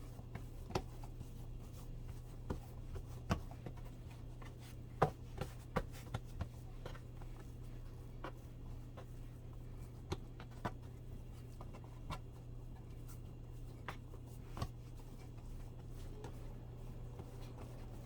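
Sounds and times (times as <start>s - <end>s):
soft rubbing and scraping: 10.8s - 18.0s
steady low hum: 10.9s - 18.0s.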